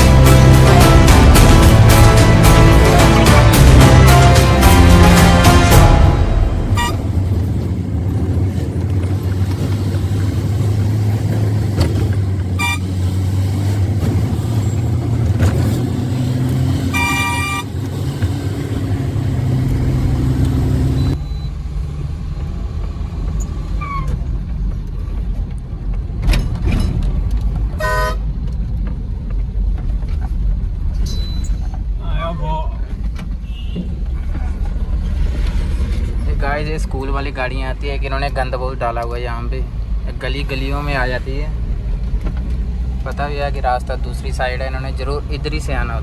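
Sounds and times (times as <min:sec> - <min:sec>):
vehicle engine droning: 0:00.0 - 0:46.0
vehicle horn tooting: 0:05.2 - 0:07.3, 0:12.6 - 0:13.0, 0:16.8 - 0:17.7, 0:27.8 - 0:28.2, 0:33.4 - 0:34.1.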